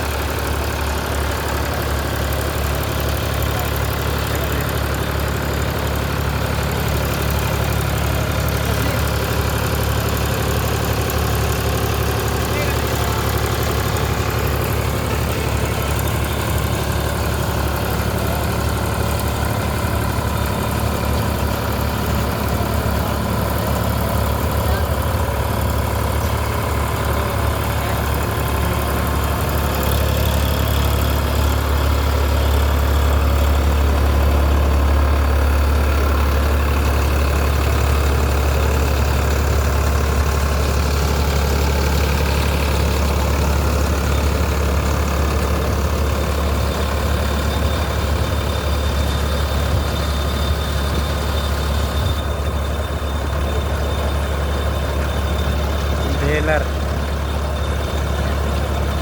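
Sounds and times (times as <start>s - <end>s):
tractor diesel engine running: 0.0s - 59.0s.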